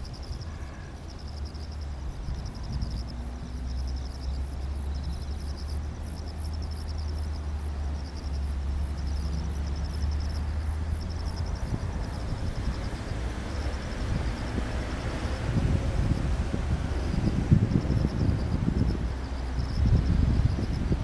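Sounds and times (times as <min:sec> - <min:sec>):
insects trilling: 0:00.0 - 0:21.0
steady low rumble: 0:01.3 - 0:21.0.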